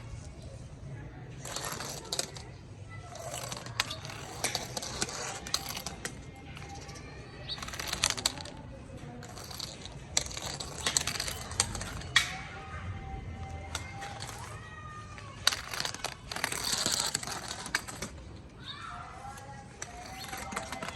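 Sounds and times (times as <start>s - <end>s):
toy ball clicking on hard floor: 1.4s - 2.5s, 3.1s - 12.5s, 13.4s - 18.2s, 19.8s - 20.9s.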